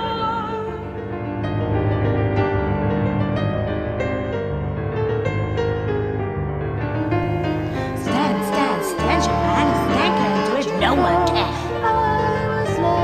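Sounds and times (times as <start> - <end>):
slow piano music with bass: 0.0 - 13.0
person speaking: 8.0 - 11.8.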